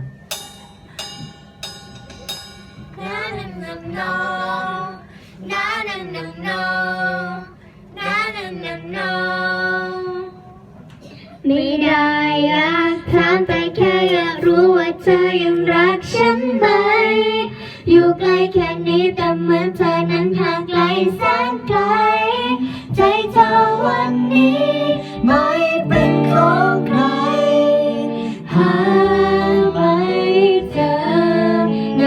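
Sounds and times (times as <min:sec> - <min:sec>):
backing track music: 0:00.0 - 0:04.3, 0:22.8 - 0:32.0
girls singing pop song: 0:02.8 - 0:10.6, 0:11.4 - 0:32.0.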